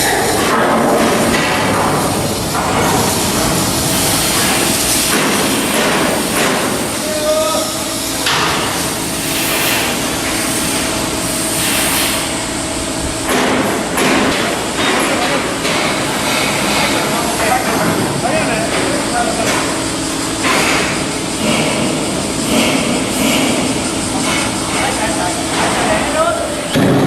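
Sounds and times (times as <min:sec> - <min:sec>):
metalwork din: 0:00.0 - 0:09.0.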